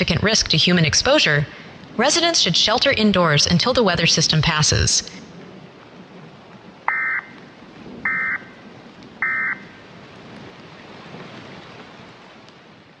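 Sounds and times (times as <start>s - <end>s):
steady rain-like hiss: 0.0s - 13.0s
digital tone bursts: 6.9s - 7.3s, 8.1s - 8.5s, 9.2s - 9.6s.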